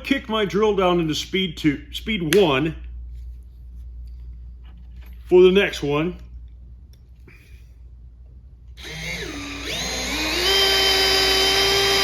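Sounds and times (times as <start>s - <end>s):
drill driving screw into wood: 8.8s - 12.0s.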